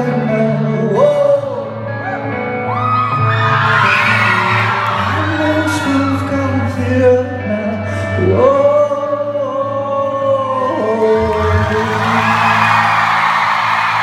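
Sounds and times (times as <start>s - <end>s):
man singing: 0.0s - 2.4s, 3.7s - 14.0s.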